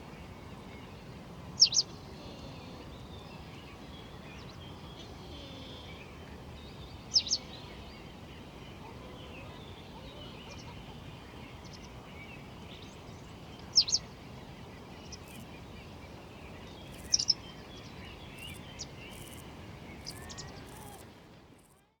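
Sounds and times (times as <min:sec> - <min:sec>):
outdoor background hiss: 0:00.0 - 0:22.0
faint bird chirps: 0:16.8 - 0:21.0.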